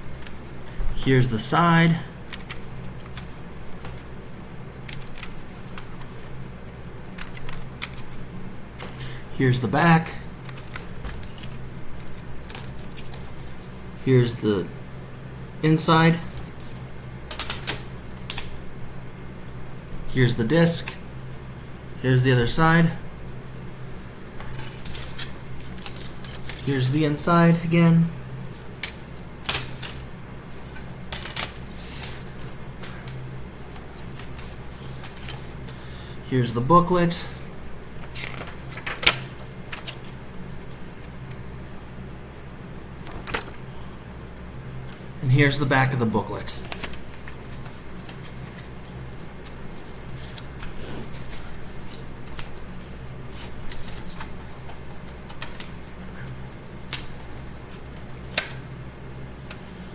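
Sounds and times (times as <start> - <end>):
steady low hum: 0.0 - 59.9
paper rustling: 4.9 - 6.4, 7.0 - 8.2, 10.4 - 13.6, 24.4 - 26.9, 28.6 - 35.8, 38.0 - 41.4, 43.0 - 43.7, 46.5 - 58.5.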